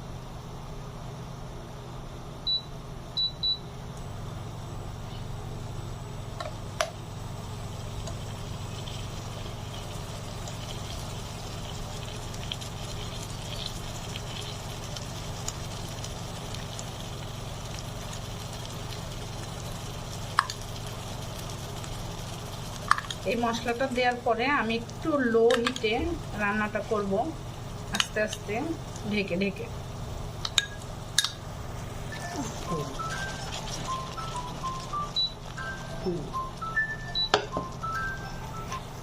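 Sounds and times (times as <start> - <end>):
sauce crackling: 7.4 - 24.0, 29.8 - 36.9.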